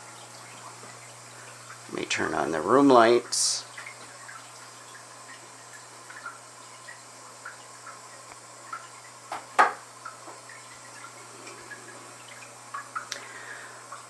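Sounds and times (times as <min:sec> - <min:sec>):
aquarium water dripping: 0:00.0 - 0:14.0
low steady hum: 0:00.0 - 0:14.0
sharp knock: 0:09.6 - 0:09.8.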